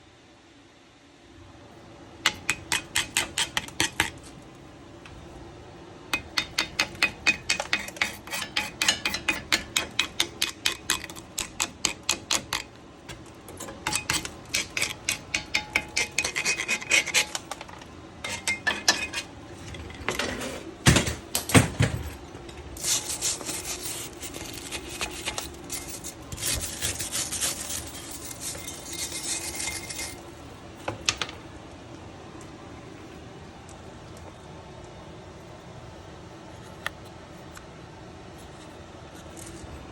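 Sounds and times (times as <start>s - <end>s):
abrasive scrubbing metal rotor: 6.2s - 12.7s, 13.6s - 19.3s.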